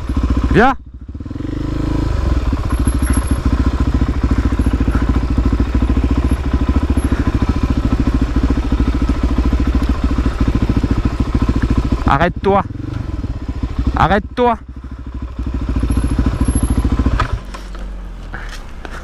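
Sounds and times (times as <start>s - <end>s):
motorcycle engine running at low revs: 0.0s - 19.0s.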